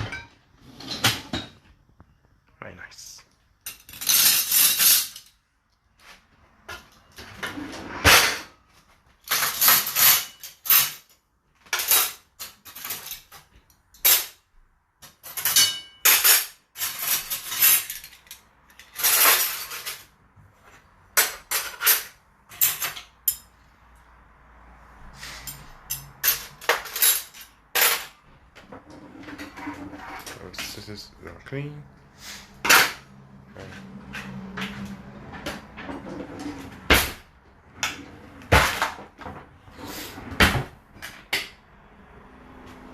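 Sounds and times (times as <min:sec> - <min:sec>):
dishes and cutlery clattering: 0:00.0 - 0:01.6, 0:09.3 - 0:11.1, 0:15.0 - 0:20.1, 0:21.1 - 0:23.5, 0:25.4 - 0:30.8.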